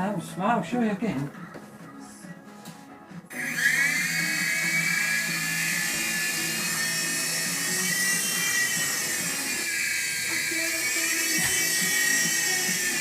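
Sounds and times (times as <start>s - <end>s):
toy helicopter motor whine: 3.3s - 13.0s.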